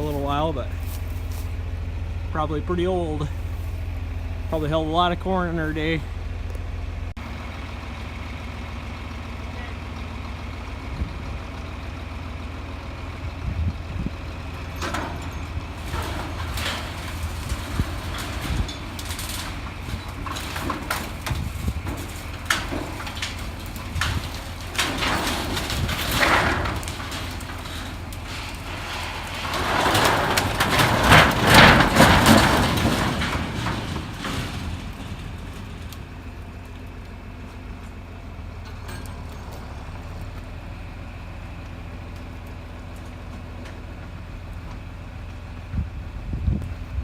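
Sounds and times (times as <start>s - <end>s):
tractor engine running: 0.0s - 47.0s
wooden structure collapsing: 14.0s - 40.6s
wooden structure knocking and cracking: 14.8s - 36.3s.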